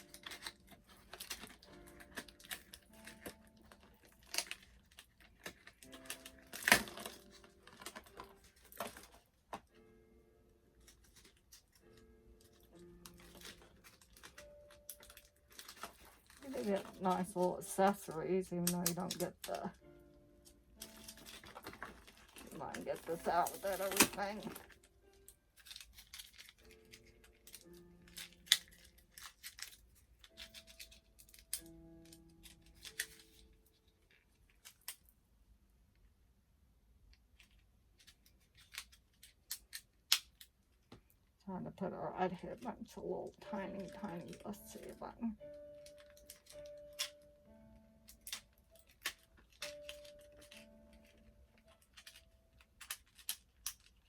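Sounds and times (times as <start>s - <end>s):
scissors snipping: 0.0s - 9.1s, 13.0s - 19.8s
plastic packaging crinkling: 0.0s - 10.0s, 10.7s - 35.2s, 37.1s - 54.0s
soft background music: 0.0s - 54.0s.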